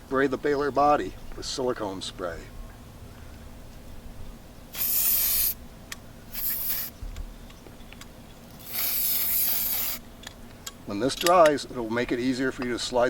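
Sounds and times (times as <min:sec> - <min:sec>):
aerosol spray hissing: 0:04.7 - 0:05.6, 0:06.3 - 0:07.0, 0:08.6 - 0:10.0.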